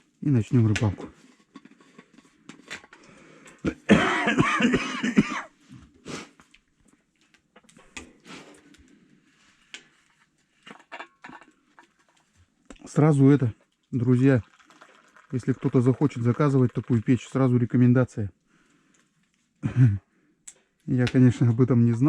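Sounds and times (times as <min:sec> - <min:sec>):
tea pouring into a cup: 0:13.4 - 0:17.9.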